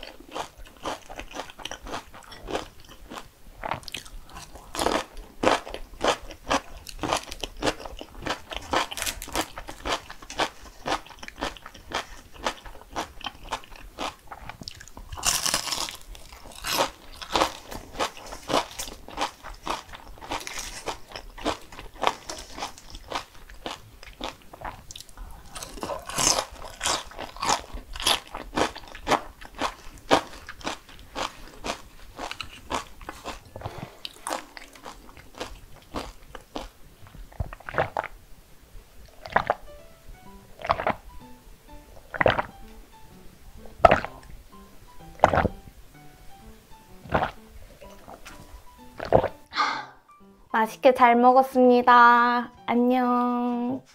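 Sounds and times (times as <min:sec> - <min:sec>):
crunchy food being chewed: 0:00.0 - 0:38.2, 0:39.0 - 0:39.7, 0:40.6 - 0:41.0, 0:42.0 - 0:42.6, 0:43.8 - 0:44.3, 0:45.2 - 0:45.5, 0:47.0 - 0:49.4.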